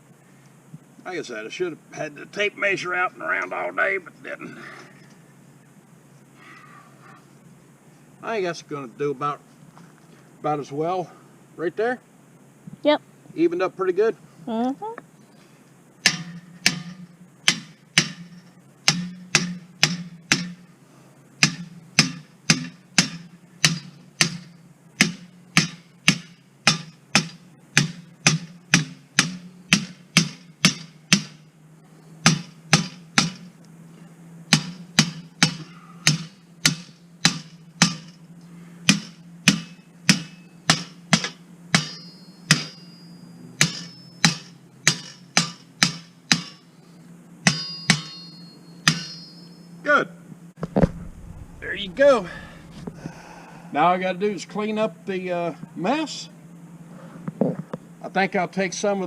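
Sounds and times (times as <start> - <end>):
hammer striking metal: 16.0 - 20.7, 21.4 - 31.5, 32.2 - 33.5, 34.5 - 38.2, 38.8 - 46.7, 47.4 - 49.7
brief metallic ring: 41.8 - 45.2, 47.5 - 49.8.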